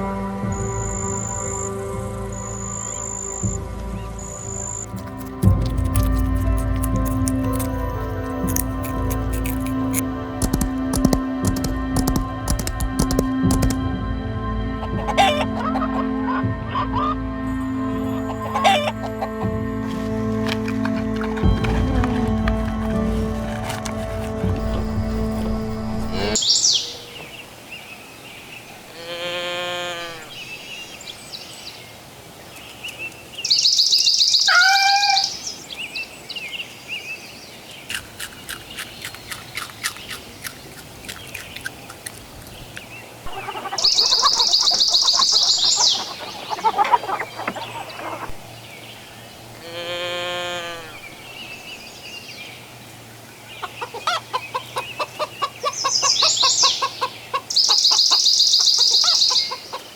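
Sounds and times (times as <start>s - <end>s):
birds chirping rapidly: 30.3s - 49.7s, 53.4s - 59.9s.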